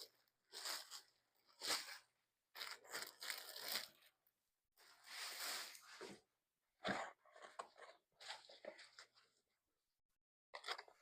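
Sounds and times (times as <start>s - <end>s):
plastic bag rustling and crinkling: 0.0s - 4.1s.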